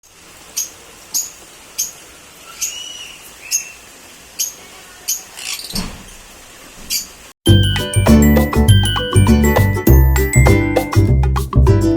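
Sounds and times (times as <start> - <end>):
lovebirds chirping: 0.4 - 6.2.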